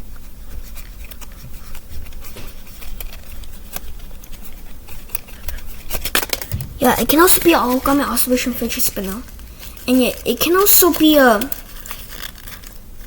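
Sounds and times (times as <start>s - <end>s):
faint low rumble: 6.5s - 9.4s.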